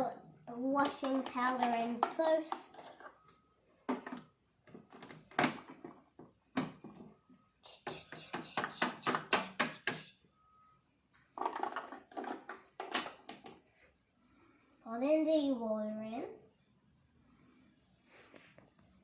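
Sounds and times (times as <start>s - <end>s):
short faint beeps: 10.0s - 10.8s.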